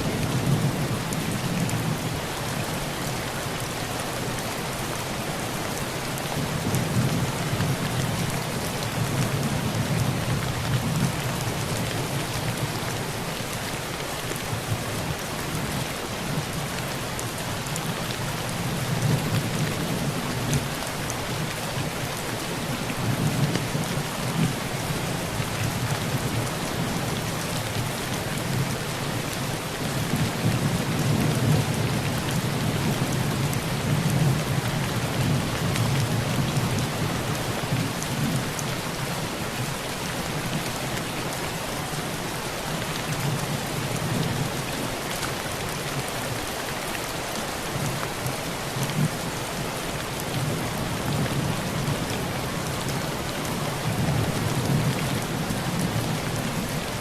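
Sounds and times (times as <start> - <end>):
heavy rain on a tin roof: 0.0 - 57.0.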